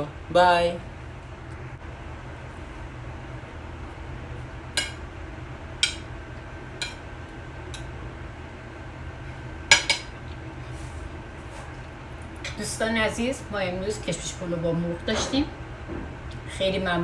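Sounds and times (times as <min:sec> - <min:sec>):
steady low hum: 0:00.0 - 0:17.0
utensil clinking against dishes: 0:09.7 - 0:10.1.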